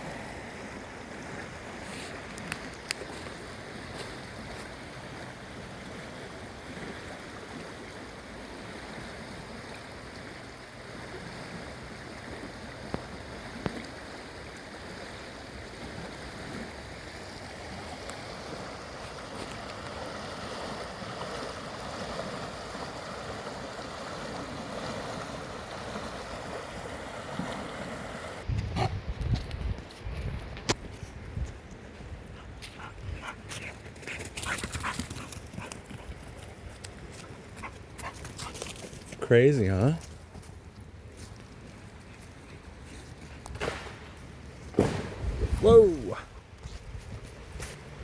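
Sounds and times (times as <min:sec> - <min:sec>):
creek water rushing: 0:00.0 - 0:28.5.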